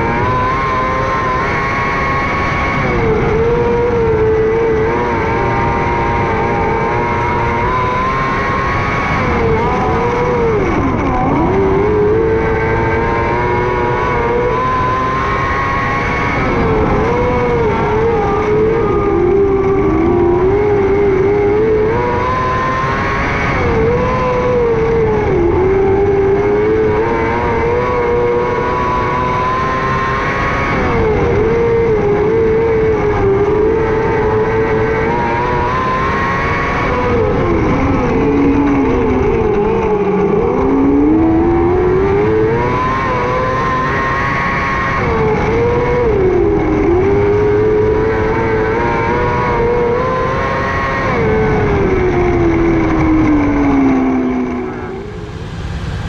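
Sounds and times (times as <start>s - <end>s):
race car engine at high revs: 0.0s - 56.0s.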